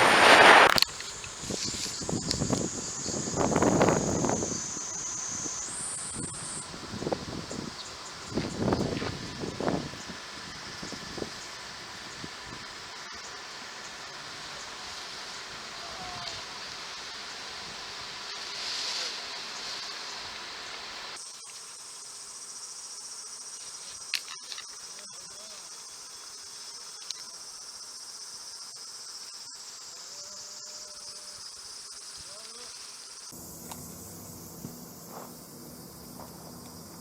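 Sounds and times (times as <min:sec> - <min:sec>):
sharp clicks: 0:00.0 - 0:02.6
insects chirping: 0:00.5 - 0:37.0.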